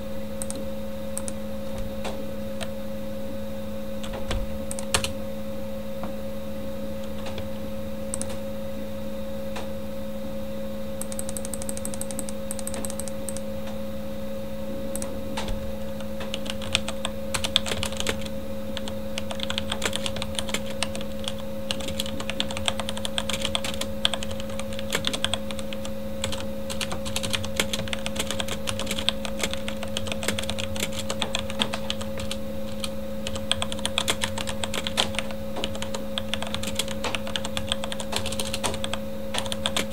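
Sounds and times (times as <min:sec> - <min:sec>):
computer fan humming: 0:00.0 - 0:39.9
mechanical keyboard typing: 0:00.4 - 0:00.6, 0:04.0 - 0:05.1, 0:07.0 - 0:07.5, 0:08.1 - 0:08.4, 0:11.0 - 0:13.4, 0:14.9 - 0:39.9.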